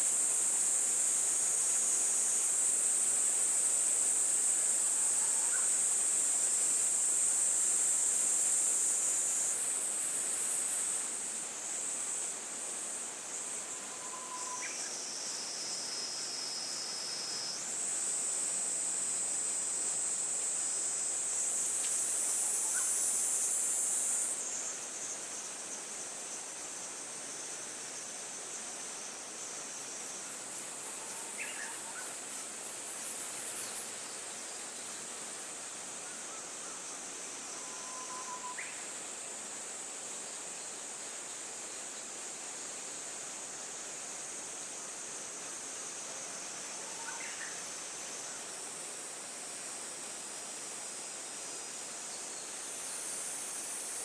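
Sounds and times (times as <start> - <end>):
insects trilling chorus: 0.0 - 12.3, 13.3 - 39.2, 40.2 - 50.3
faint bird chirps: 13.9 - 14.9, 37.6 - 38.8.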